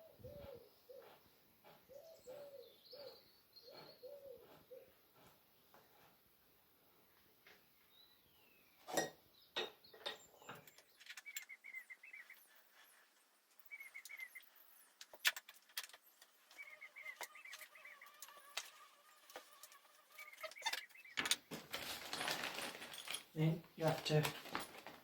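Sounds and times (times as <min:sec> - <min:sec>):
fitting squeaking and creaking: 0:19.4 - 0:25.0.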